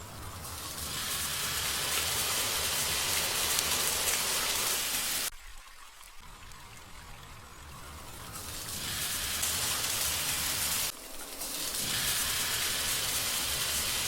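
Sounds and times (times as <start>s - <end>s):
dense hiss with crackle: 0.0s - 14.0s.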